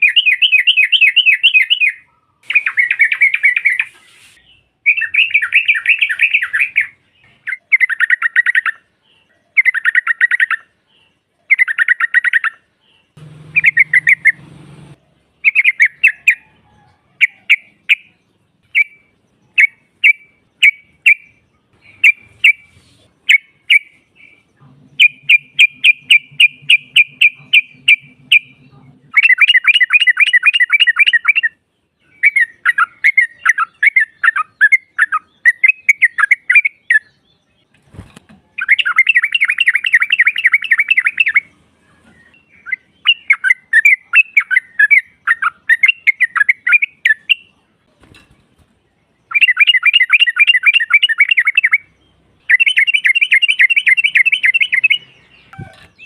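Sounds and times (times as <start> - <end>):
bird chattering call: 11.5 - 16.5, 17.2 - 31.6.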